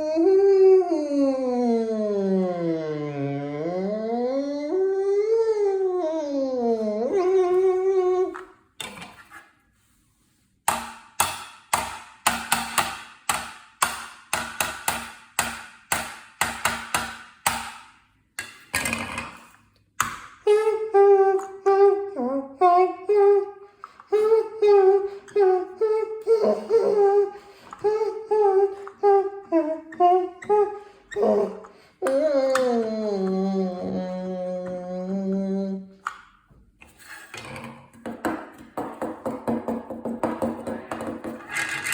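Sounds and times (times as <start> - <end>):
person singing a tune: 0.0 - 8.4, 20.5 - 36.0.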